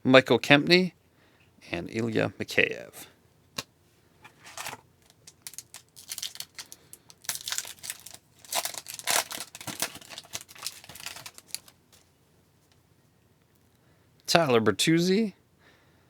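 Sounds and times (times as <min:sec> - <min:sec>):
foil wrapper crinkling: 0:04.3 - 0:12.0.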